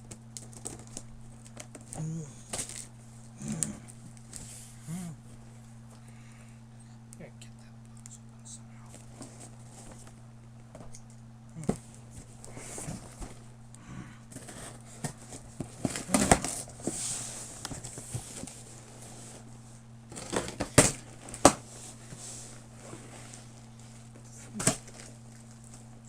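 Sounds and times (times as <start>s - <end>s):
packing material crinkling: 0.0s - 4.4s.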